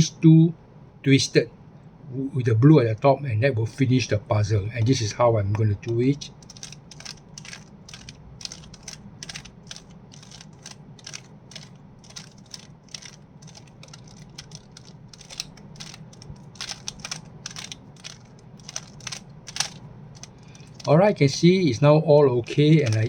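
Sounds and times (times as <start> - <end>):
puzzle cube plastic clicking: 5.9 - 21.4, 22.7 - 23.0.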